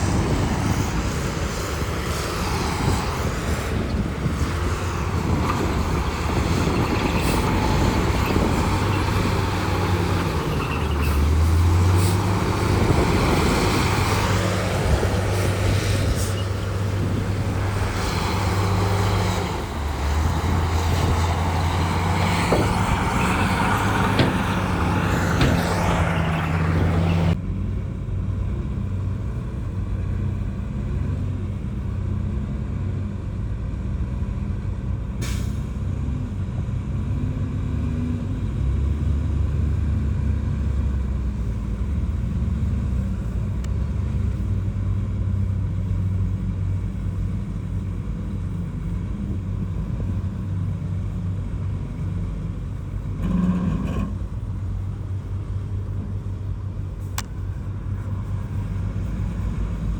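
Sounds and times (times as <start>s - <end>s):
heavy diesel machinery engine: 0.0s - 59.9s
metallic knocks and rattles: 22.5s - 26.2s.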